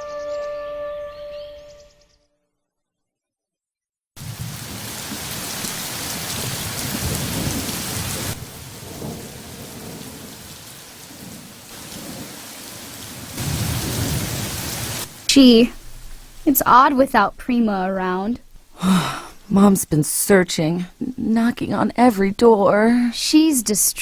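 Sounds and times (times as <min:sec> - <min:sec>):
rolling thunder rumbles: 0:04.2 - 0:17.2
heavy rain: 0:04.2 - 0:19.8.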